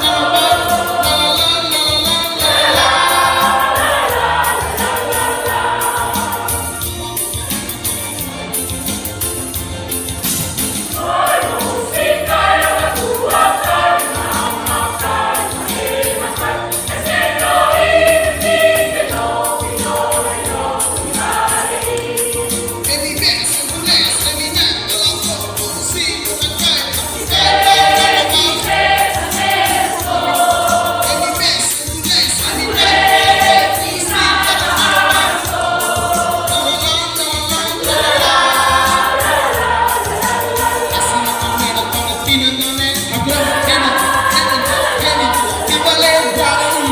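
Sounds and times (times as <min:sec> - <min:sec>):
choir singing a hymn: 0:00.0 - 0:07.0, 0:10.8 - 0:46.9
instrumental accompaniment: 0:00.0 - 0:46.9
shaken percussion: 0:00.0 - 0:46.9.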